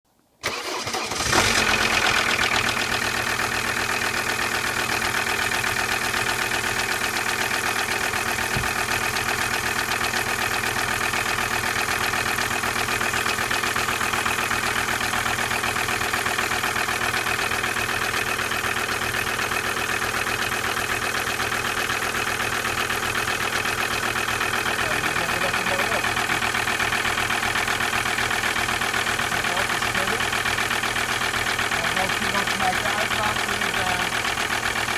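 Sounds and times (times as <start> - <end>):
engine cranking: 0.4 - 3.2, 23.5 - 34.9
diesel engine idling: 0.4 - 34.9.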